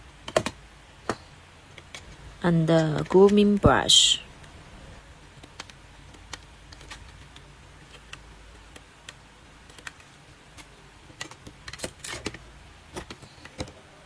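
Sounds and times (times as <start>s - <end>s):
plastic parts clicking: 0.2s - 0.6s, 5.4s - 13.8s.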